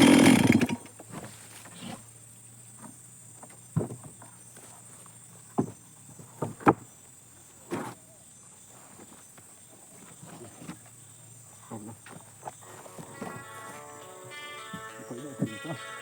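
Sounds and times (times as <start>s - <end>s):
knocks and thuds: 2.8s - 4.3s, 5.5s - 6.9s.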